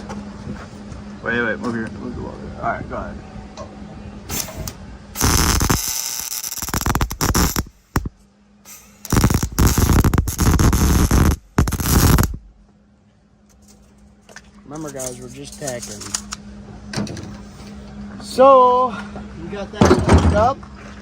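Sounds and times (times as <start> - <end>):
welding arc crackling and sizzling: 4.3 - 12.5.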